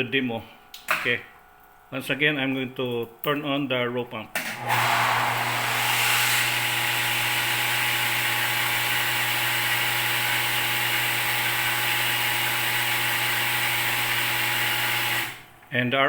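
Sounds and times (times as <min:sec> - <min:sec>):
pump motors humming: 0:04.4 - 0:15.8.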